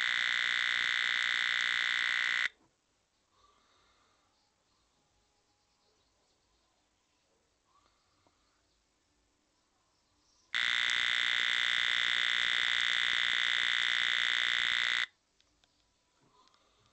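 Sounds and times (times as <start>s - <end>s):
high-pitched electronic alarm tone: 0.0s - 2.5s, 10.6s - 15.1s.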